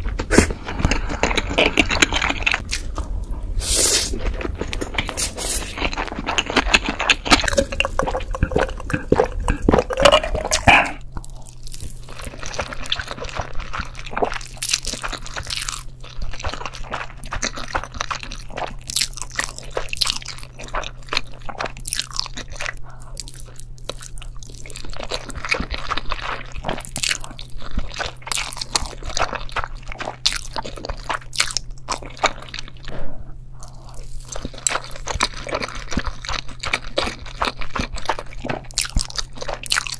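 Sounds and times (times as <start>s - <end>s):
close-up crunching and crackling: 0.0s - 39.9s
faint low hum: 0.0s - 39.9s.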